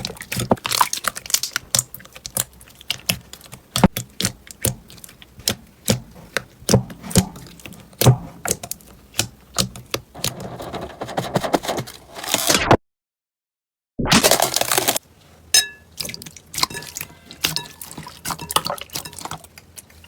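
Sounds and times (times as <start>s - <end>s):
slime clicking and crackling: 0.0s - 10.5s.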